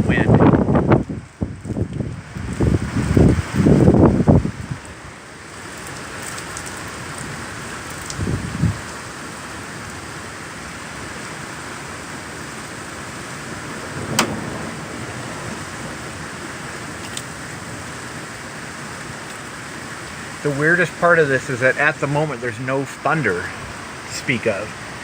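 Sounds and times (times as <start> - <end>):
heavy rain pouring: 0.0 - 25.0
low thumps: 14.0 - 15.8.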